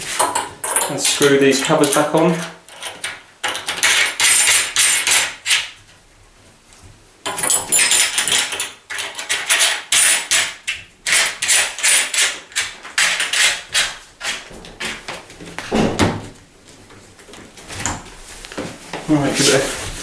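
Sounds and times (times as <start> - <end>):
metallic clicking and scraping: 7.3 - 15.0.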